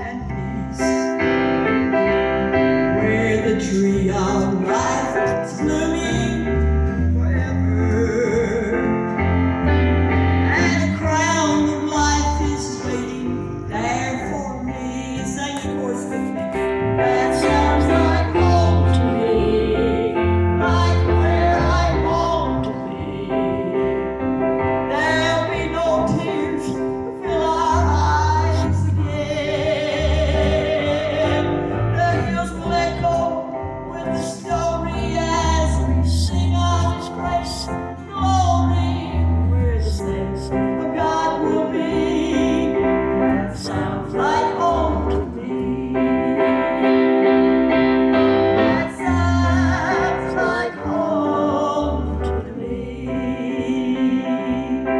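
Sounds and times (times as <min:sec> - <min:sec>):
pulsing bass line: 0:00.0 - 0:54.9
person singing with vibrato: 0:02.9 - 0:09.2, 0:10.4 - 0:47.4, 0:48.2 - 0:54.9.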